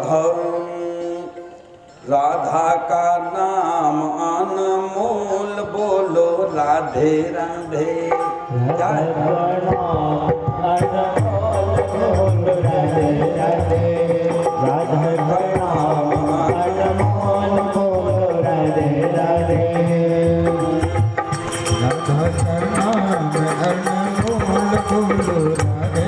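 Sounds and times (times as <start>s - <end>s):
devotional song melody: 0.0s - 26.0s
hand drum rhythm: 7.7s - 26.0s
light metallic ticks: 21.3s - 26.0s.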